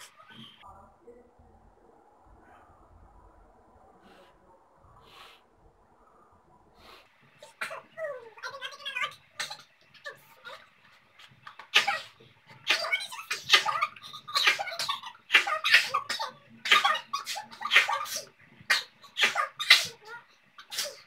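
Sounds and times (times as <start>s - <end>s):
people sneezing: 14.4s - 21.0s.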